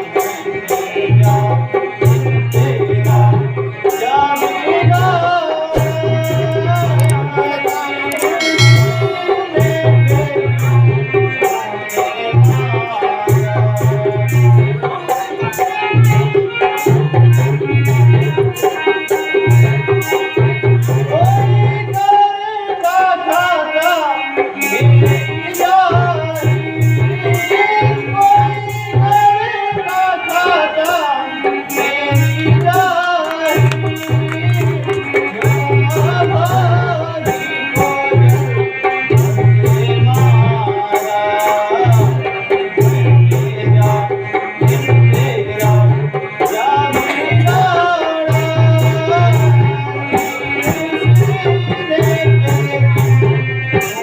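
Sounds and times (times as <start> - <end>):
high percussive tick: 7.0 - 7.2, 8.1 - 10.2
person singing melody: 8.1 - 10.3.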